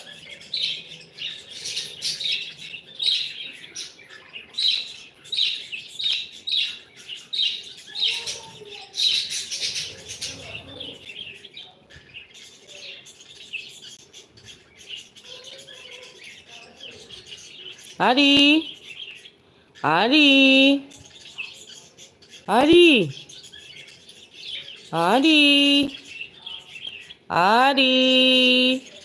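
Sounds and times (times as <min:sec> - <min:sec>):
parrots chirping: 0:00.0 - 0:29.0.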